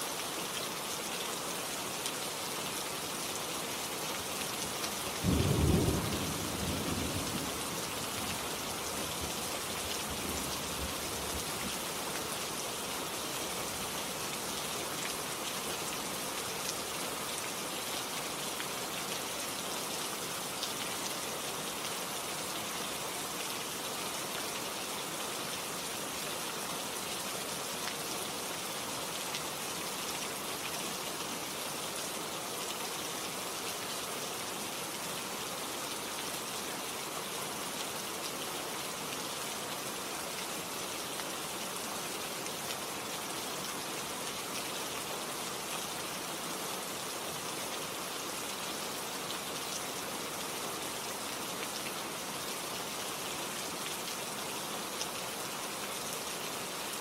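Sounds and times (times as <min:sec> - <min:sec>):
heavy rain: 0:00.0 - 0:57.0.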